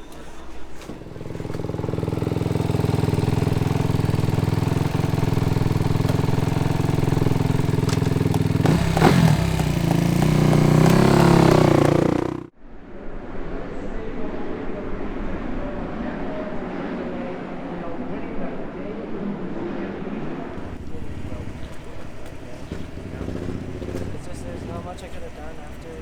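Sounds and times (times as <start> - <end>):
dirt bike engine revving: 0.1 - 12.5, 20.6 - 26.0.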